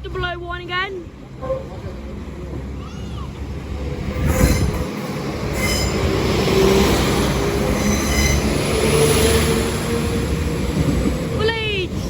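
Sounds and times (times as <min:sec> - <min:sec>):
train rumbling: 0:00.0 - 0:12.0
wheels squealing: 0:04.1 - 0:09.8.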